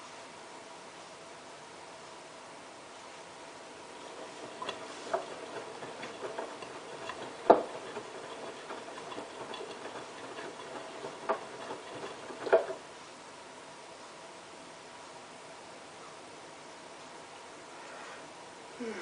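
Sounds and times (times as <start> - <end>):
washing machine hum: 3.4 - 13.1
washing machine drum knocking: 4.0 - 12.8.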